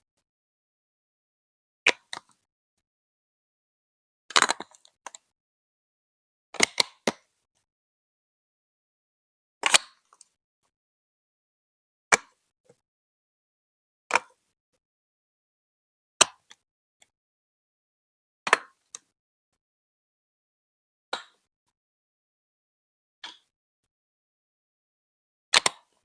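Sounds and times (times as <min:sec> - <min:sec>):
plastic bricks clicking into place: 0:25.6 - 0:25.8.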